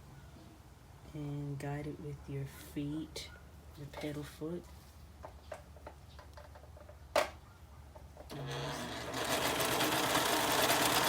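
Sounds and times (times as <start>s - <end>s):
serger stitching: 8.3s - 11.0s.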